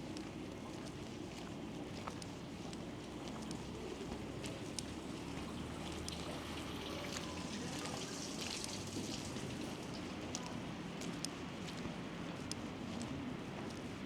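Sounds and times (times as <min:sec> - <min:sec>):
light ticks: 0:00.1 - 0:05.0, 0:05.9 - 0:06.3, 0:09.9 - 0:13.9.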